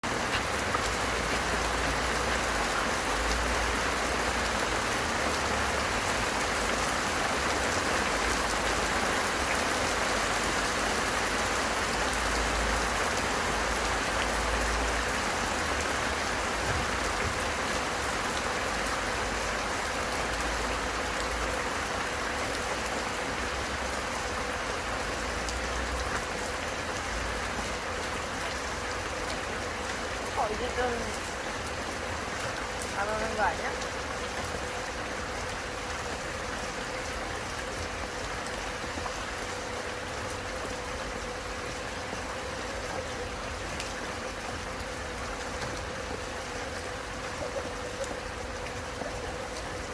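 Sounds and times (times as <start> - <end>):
steady rain falling: 0.0 - 49.9.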